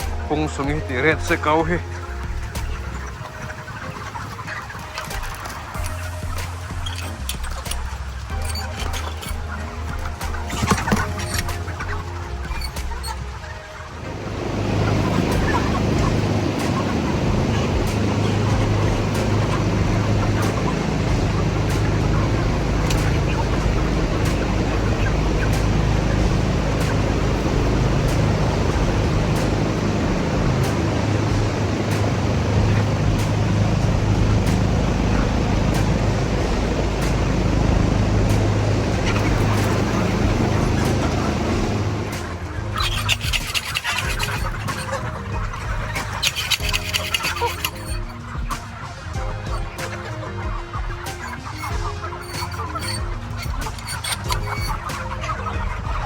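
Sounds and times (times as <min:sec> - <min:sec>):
noisy rush: 0:00.0 - 0:56.0
motor running steadily: 0:14.1 - 0:48.6.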